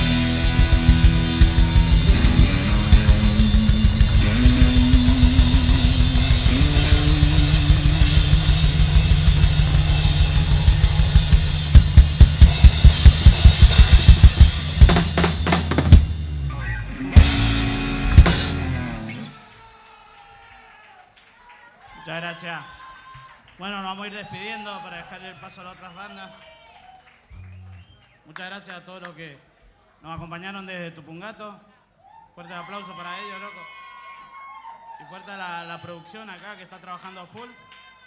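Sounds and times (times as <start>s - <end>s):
hard accented drum hits: 0.0s - 19.2s
rock band playing live: 0.0s - 19.3s.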